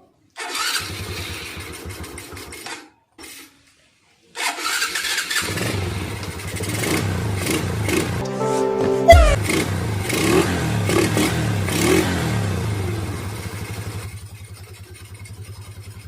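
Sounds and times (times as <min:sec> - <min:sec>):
motorcycle engine running: 0:10.8 - 0:16.0.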